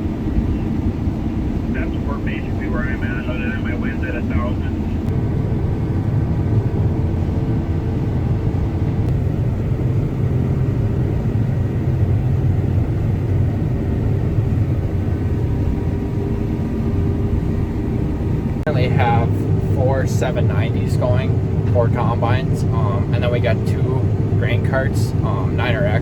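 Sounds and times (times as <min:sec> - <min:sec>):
combine harvester engine drone: 0:00.0 - 0:26.0.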